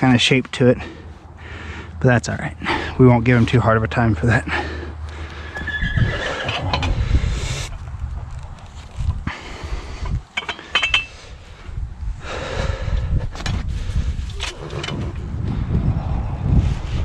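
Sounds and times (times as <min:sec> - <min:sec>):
wind rumble on microphone: 0:05.6 - 0:17.0
metal tools clinking: 0:10.0 - 0:11.2.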